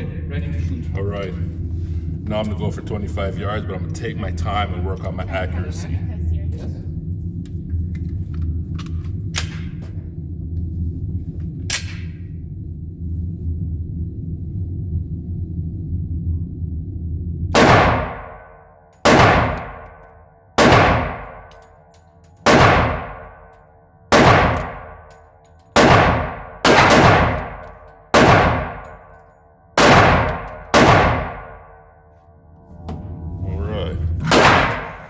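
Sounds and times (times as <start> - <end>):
pistol shots with echo: 17.6 - 20.0, 20.6 - 21.6, 22.4 - 23.5, 24.1 - 25.1, 25.8 - 29.1, 29.8 - 31.8, 34.3 - 35.0.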